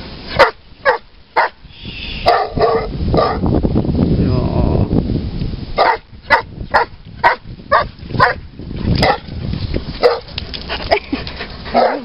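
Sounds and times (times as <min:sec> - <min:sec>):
dog barking sharply: 0:00.4 - 0:01.6, 0:02.2 - 0:03.4, 0:05.8 - 0:08.4, 0:10.0 - 0:10.3.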